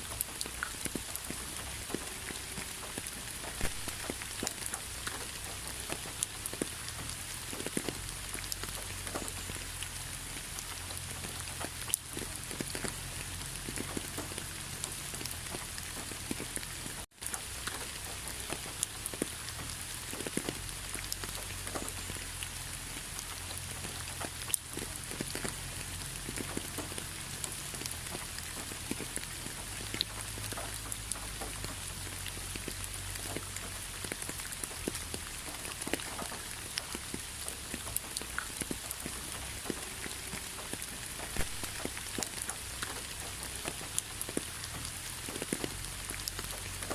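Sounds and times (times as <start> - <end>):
raindrops hitting close by: 0.0 - 46.9
steady rainfall: 0.0 - 46.9.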